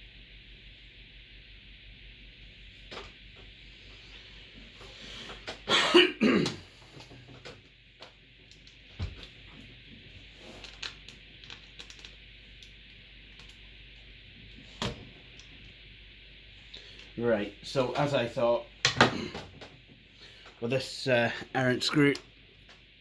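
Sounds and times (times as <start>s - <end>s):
steady hiss: 0.0s - 23.0s
man coughing: 5.7s - 6.7s.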